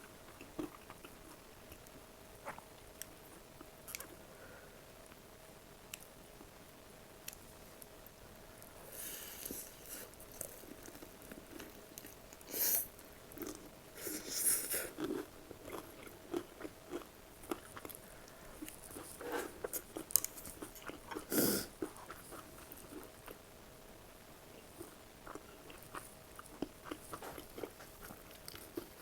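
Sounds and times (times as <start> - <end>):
food chewing: 0.3 - 2.7, 13.3 - 23.4, 24.7 - 29.0.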